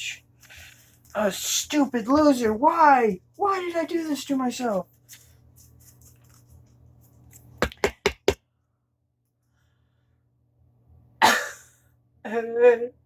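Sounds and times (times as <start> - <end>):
quick sharp knocks: 7.6 - 8.4.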